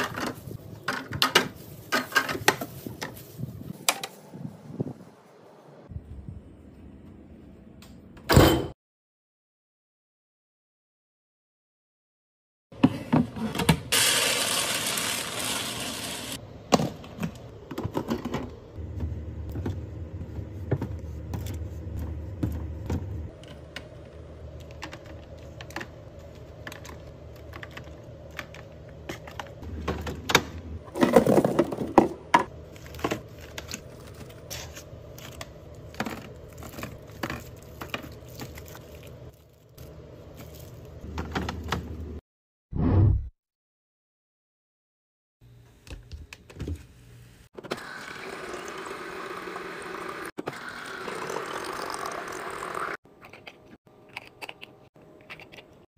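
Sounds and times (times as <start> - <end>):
plastic containers clattering: 26.6 - 34.3.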